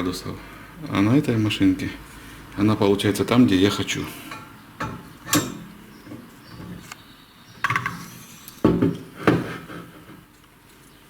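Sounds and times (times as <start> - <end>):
sharp metallic knocks and clicks: 4.4 - 7.0.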